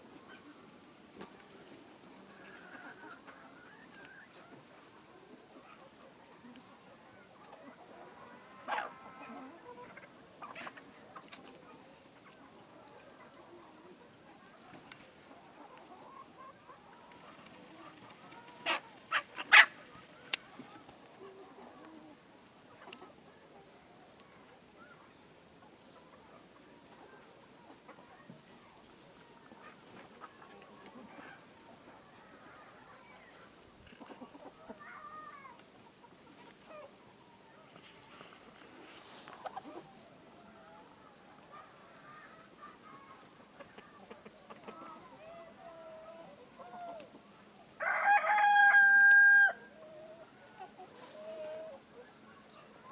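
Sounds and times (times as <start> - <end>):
hens clucking: 0.0 - 52.9
hen squawks: 17.1 - 20.6.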